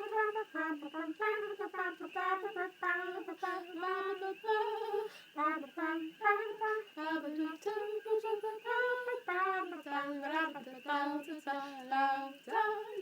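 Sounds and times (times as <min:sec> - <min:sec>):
woman singing unaccompanied: 0:00.0 - 0:13.0.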